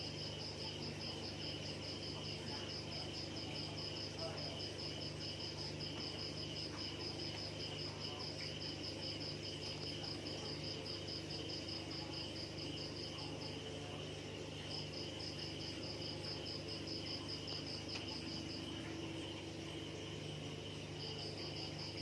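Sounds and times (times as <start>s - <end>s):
low steady hum: 0.0s - 22.0s
insect chirping in pulses: 6.0s - 22.0s.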